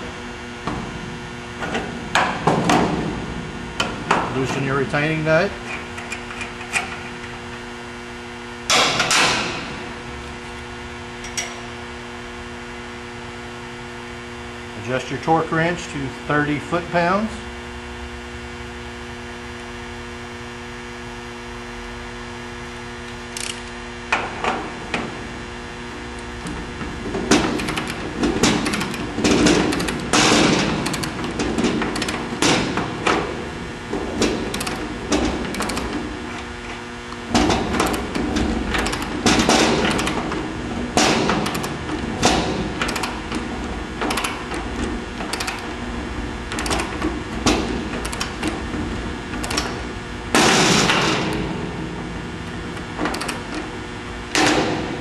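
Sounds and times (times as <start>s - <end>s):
mains hum: 0.0s - 55.0s.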